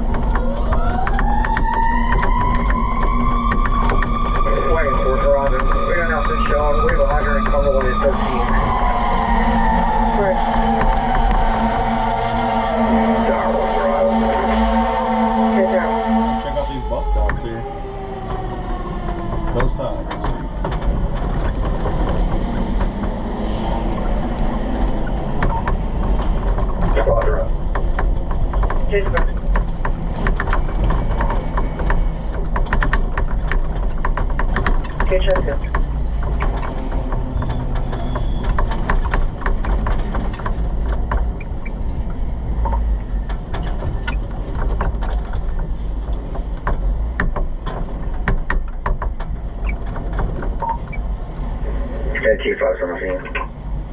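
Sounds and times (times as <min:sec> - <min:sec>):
rattles and clicks: 0:00.0 - 0:12.1, 0:18.3 - 0:51.6
truck engine and road rumble: 0:00.0 - 0:53.9.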